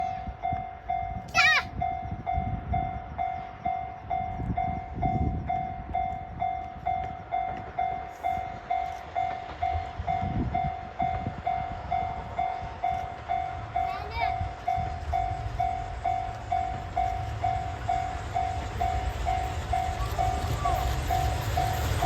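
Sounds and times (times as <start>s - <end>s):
level-crossing warning bell: 0.0s - 22.0s
low rumble of train: 0.0s - 22.0s.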